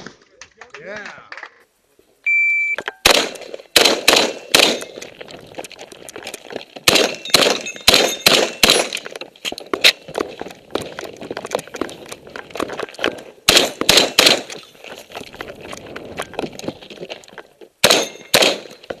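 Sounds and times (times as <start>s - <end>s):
shot timer beep: 2.3s - 2.9s
shotgun fired rapidly: 3.1s - 4.8s, 6.9s - 8.9s
steel targets ringing: 7.0s - 9.0s, 17.9s - 18.4s.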